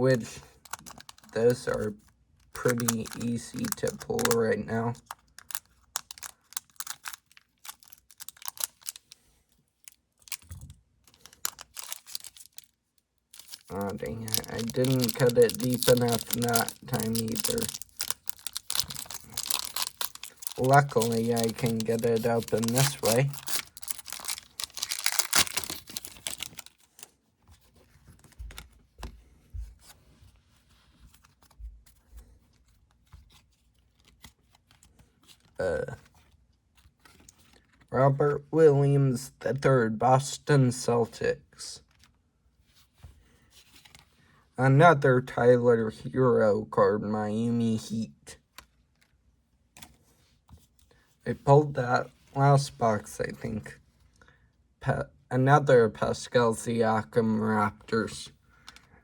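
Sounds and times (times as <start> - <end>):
foil wrapper crinkling: 0.5 - 1.9, 2.5 - 27.1.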